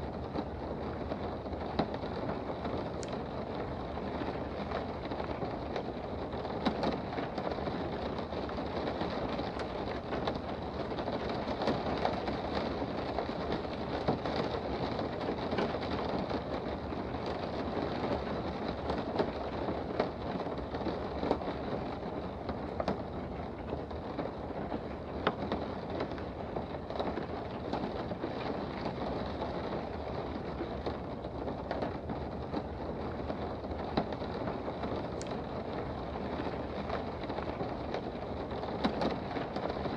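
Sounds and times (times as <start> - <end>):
steady rain hiss: 0.0 - 39.9
single raindrops tapping: 1.7 - 12.7, 19.9 - 39.9.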